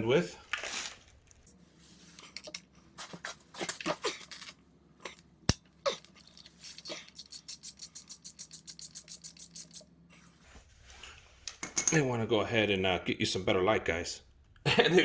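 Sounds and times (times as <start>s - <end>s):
ratchet clicking: 7.2s - 9.8s.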